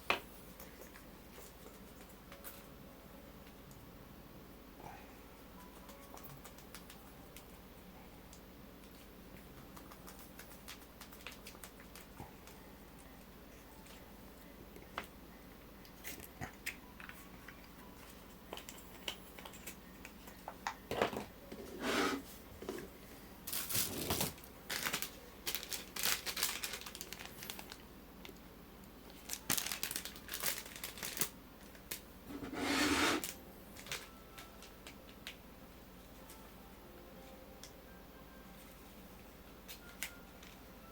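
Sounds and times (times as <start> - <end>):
plastic packaging rustling: 23.5 - 27.9, 29.1 - 35.4.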